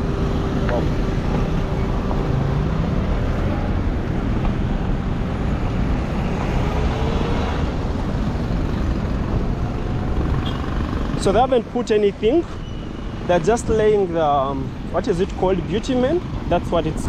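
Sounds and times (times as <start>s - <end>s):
road traffic noise: 0.0s - 17.0s.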